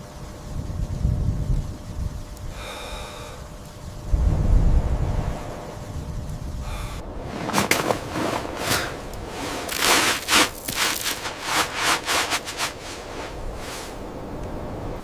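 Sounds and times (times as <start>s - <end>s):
snow crunching and scraping: 6.6s - 14.2s.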